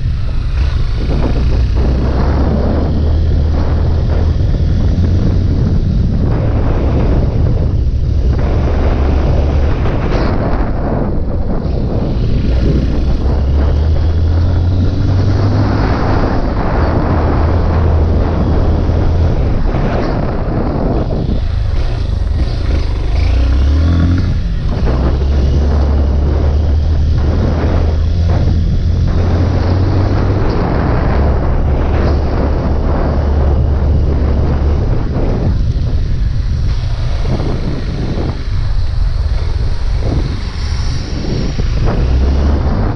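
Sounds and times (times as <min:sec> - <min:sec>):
motorcycle engine running: 0:00.0 - 0:42.9
wind buffeting microphone: 0:00.0 - 0:42.9.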